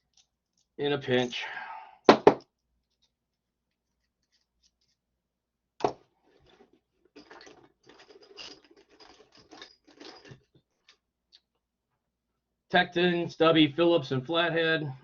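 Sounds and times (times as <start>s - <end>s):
hand tools scraping and clattering: 6.2s - 11.0s.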